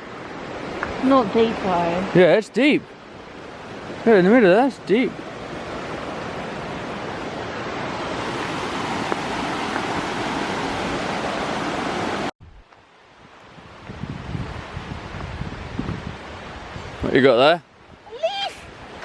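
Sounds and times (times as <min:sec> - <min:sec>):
river and waterfall rushing: 0:00.0 - 0:19.0
quiet outdoor background: 0:12.4 - 0:19.0.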